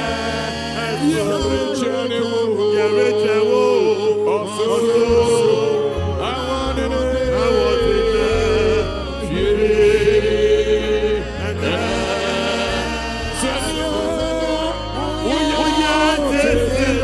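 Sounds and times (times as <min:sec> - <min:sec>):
gospel singing voices: 0:00.0 - 0:17.0
steady bass line: 0:00.0 - 0:17.0.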